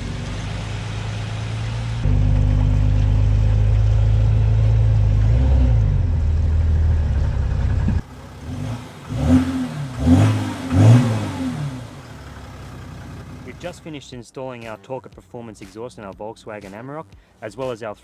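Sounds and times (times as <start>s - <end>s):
diesel engine revving: 0.0s - 14.0s.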